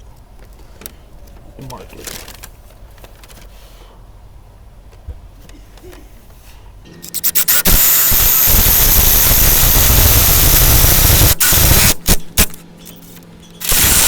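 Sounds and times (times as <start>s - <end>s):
power drill boring into wood: 7.3s - 12.2s, 13.6s - 14.0s.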